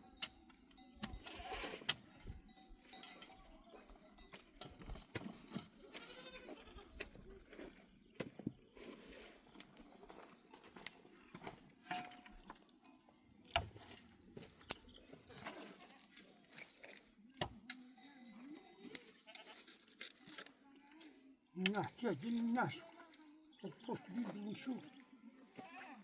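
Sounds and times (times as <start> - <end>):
flock bleating: 5.9 - 7.0, 21.7 - 26.0.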